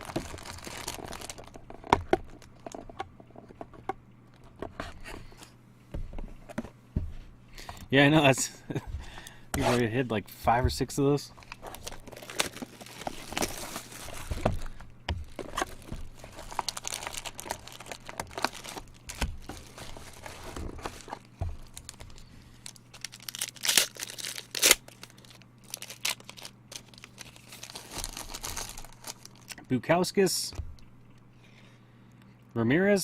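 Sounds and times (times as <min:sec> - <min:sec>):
wrappers crinkling and tearing: 0:00.0 - 0:03.0, 0:11.4 - 0:29.6.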